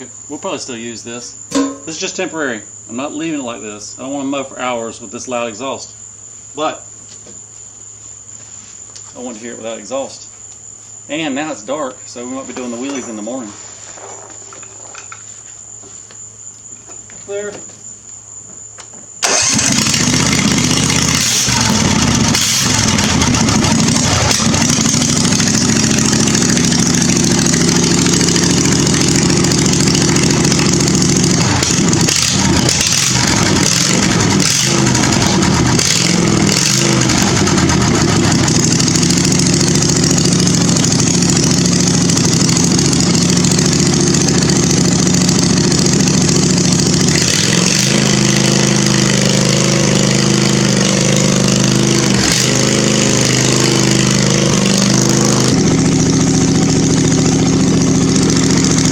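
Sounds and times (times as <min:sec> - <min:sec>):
mower engine running loud: 0:19.2 - 0:58.9.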